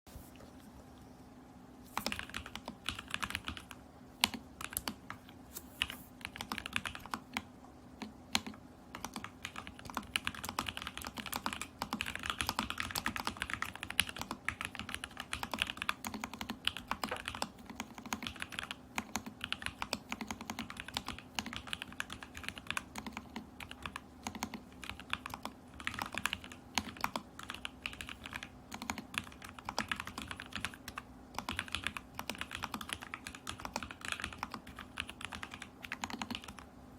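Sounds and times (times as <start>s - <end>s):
faint steady hum: 0.1s - 36.9s
fast typing on mechanical keyboard: 2.0s - 36.7s.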